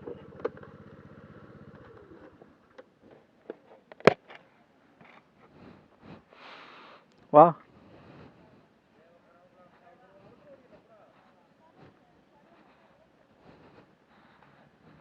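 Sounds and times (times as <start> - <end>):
motorcycle engine idling: 0.0 - 2.8.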